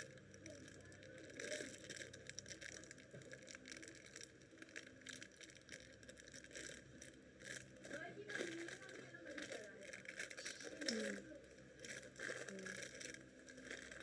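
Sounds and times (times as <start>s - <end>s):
low background hum: 0.0s - 14.0s
packaging clicks and rustles: 0.0s - 14.0s.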